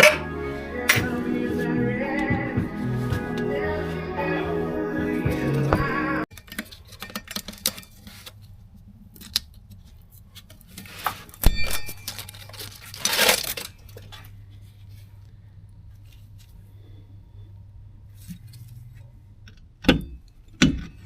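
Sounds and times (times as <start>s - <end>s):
background music: 0.0s - 6.3s.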